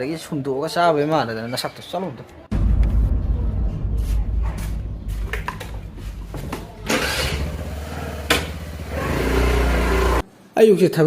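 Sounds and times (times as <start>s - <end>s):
vehicle engine rumbling: 2.5s - 10.2s.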